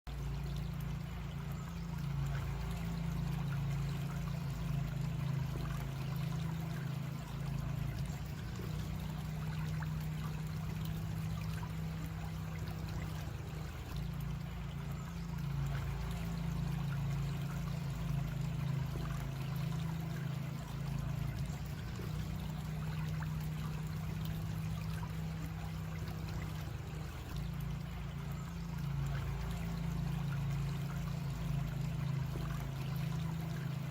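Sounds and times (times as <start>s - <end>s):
creek water babbling: 0.1s - 33.9s.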